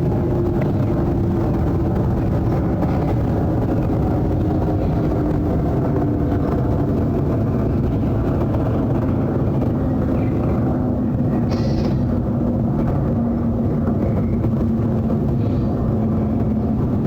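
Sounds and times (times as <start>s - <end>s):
jet airliner flying overhead: 0.0s - 17.0s.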